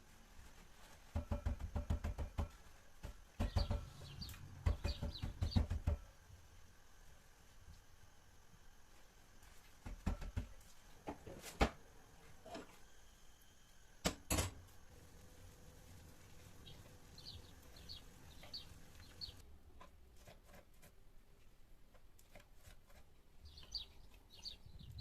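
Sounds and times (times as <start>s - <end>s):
sharp knocks and clicks: 1.2s - 6.1s.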